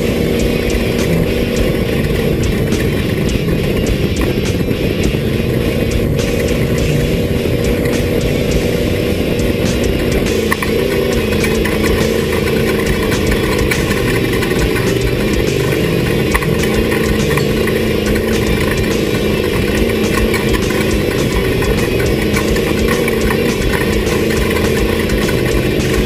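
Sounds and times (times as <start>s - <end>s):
off-road vehicle engine running: 0.0s - 26.0s.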